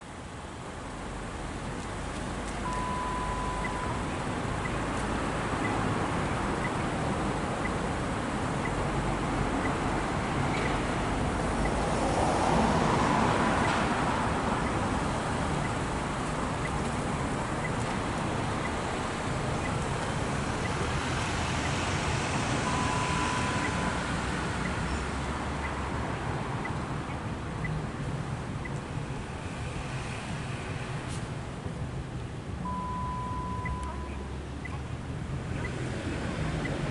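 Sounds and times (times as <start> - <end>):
city road traffic: 0.0 - 36.9
short high beep: 2.6 - 4.0, 22.7 - 23.9, 32.7 - 34.2.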